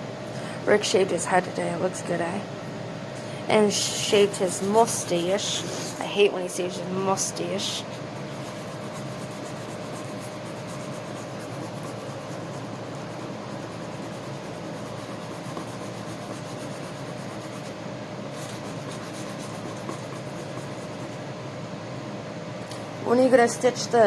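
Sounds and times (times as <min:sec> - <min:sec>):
sandpaper scratching on bumper: 0:08.3 - 0:17.8, 0:18.4 - 0:21.1.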